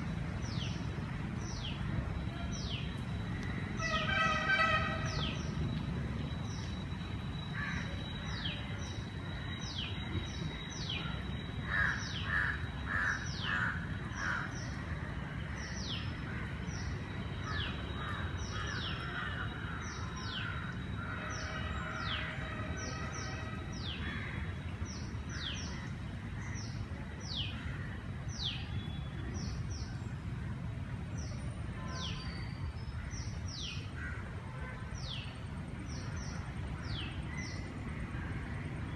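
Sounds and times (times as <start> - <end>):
birds cawing: 7.6 - 8.4, 11.6 - 14.8, 15.4 - 24.6.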